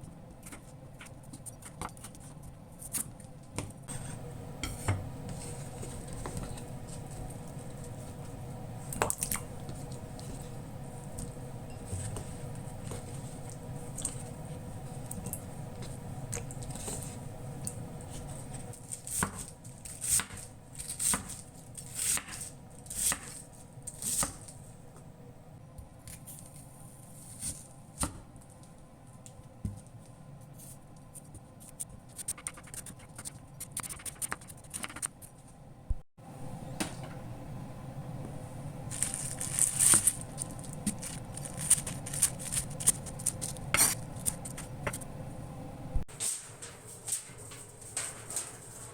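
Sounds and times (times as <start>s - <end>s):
steady low hum: 0.0s - 48.9s
food preparation scrapes and knocks: 3.6s - 14.4s.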